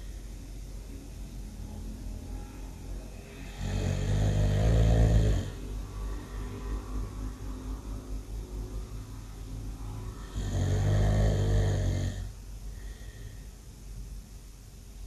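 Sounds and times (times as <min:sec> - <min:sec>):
loud snoring: 0:03.4 - 0:05.7, 0:10.2 - 0:12.3.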